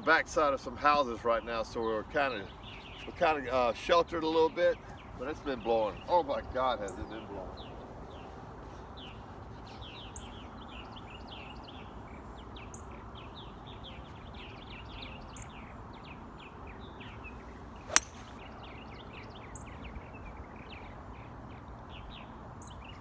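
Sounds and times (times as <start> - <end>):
small birds chirping: 1.3 - 23.0
golf club striking ball: 17.9 - 18.4.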